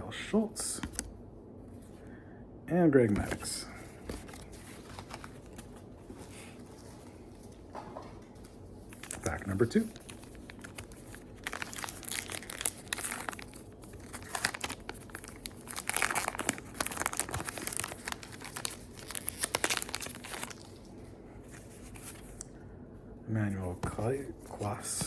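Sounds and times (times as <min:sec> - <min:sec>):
wrapper tearing and crinkling: 0:08.8 - 0:20.9.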